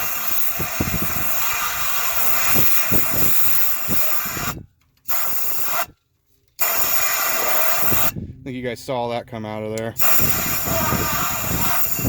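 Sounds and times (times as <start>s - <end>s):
compressed air hissing: 0.0s - 5.9s, 10.0s - 12.0s.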